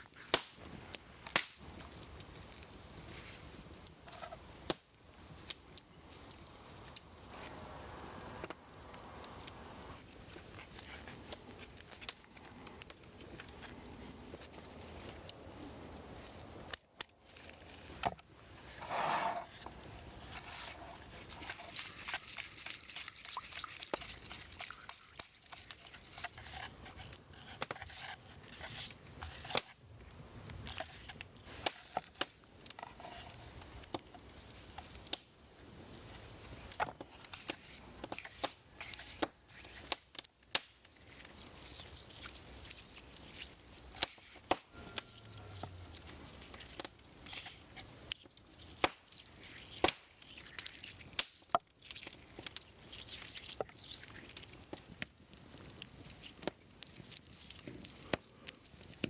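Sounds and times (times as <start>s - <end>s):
rustling and scraping: 17.2s - 22.6s, 30.6s - 35.1s.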